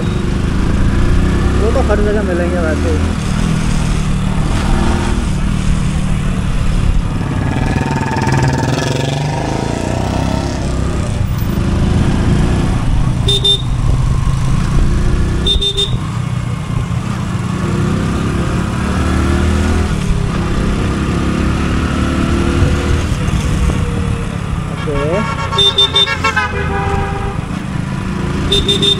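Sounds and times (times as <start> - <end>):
motorcycle engine revving: 0.0 - 28.9.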